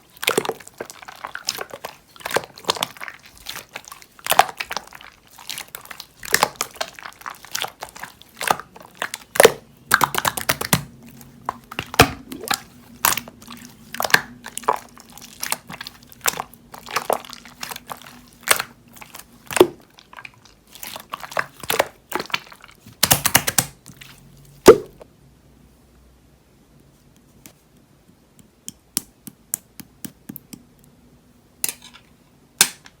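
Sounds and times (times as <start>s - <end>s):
slime popping and crackling: 0.1s - 24.0s.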